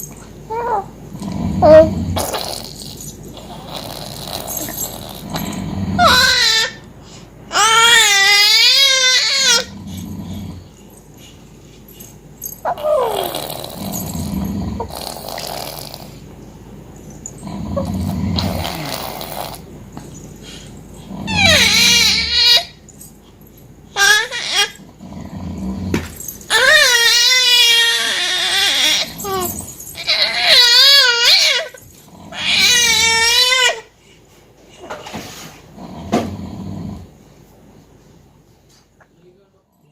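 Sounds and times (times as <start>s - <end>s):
baby grunting: 1.5s - 6.8s, 7.5s - 10.0s, 12.7s - 16.2s, 17.6s - 19.7s, 21.2s - 22.8s, 25.9s - 33.9s
baby crying: 6.0s - 6.8s, 7.5s - 9.7s, 12.7s - 13.4s, 21.3s - 22.8s, 24.0s - 24.8s, 26.5s - 33.9s
baby squealing: 6.0s - 6.8s, 7.5s - 9.7s, 12.7s - 13.4s, 21.3s - 22.8s, 26.5s - 31.8s, 32.4s - 33.8s.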